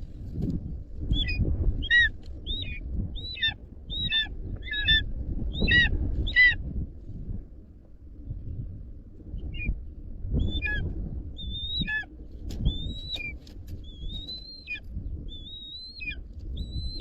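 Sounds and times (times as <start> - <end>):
low rumble: 0.0 - 17.0
eagle calling: 1.1 - 6.6, 10.4 - 17.0.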